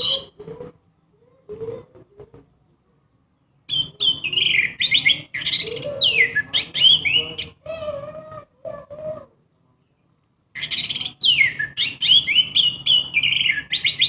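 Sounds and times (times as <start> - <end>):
thrush singing whistled trills: 0.0 - 0.4, 3.7 - 7.6, 10.6 - 14.0.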